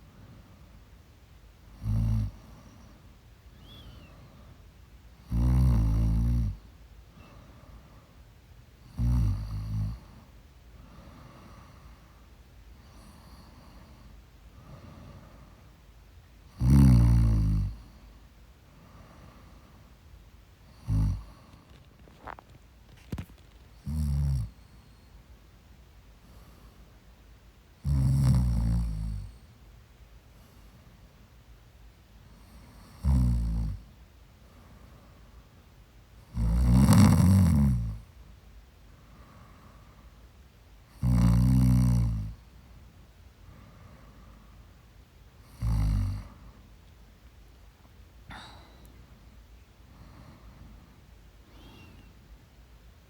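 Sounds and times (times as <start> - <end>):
quiet breathing: 0.0 - 27.8, 28.4 - 36.8, 37.6 - 53.0
loud snoring: 1.8 - 2.4, 5.3 - 6.6, 8.9 - 10.0, 16.6 - 17.8, 20.8 - 22.4, 23.8 - 24.5, 27.8 - 29.3, 32.9 - 33.8, 36.3 - 38.0, 41.0 - 42.4, 45.4 - 46.4.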